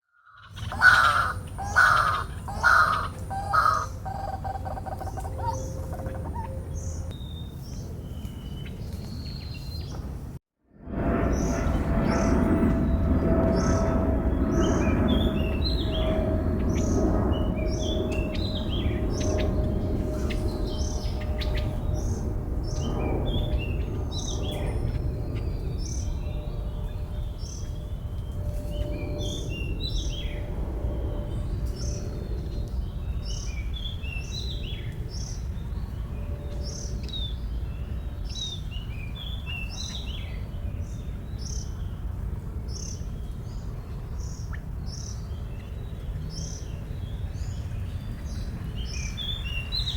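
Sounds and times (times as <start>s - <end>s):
bird giving rough calls: 0.5s - 6.5s
birds chirping and whistling: 0.5s - 10.0s
low rumbling background noise: 0.5s - 49.9s.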